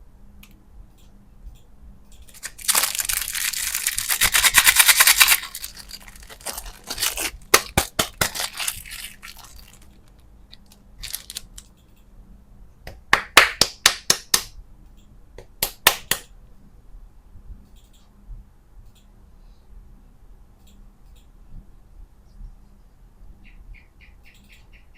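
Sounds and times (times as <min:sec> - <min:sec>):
candy packaging crackling: 0:02.3 - 0:11.7.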